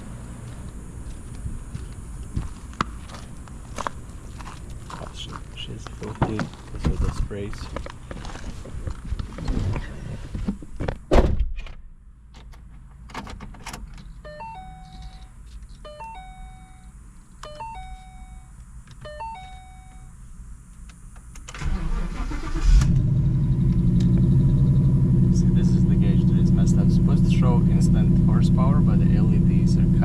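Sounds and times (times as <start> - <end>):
car warning chime: 14.2 - 20.2
car engine starting and idling: 21.0 - 30.0.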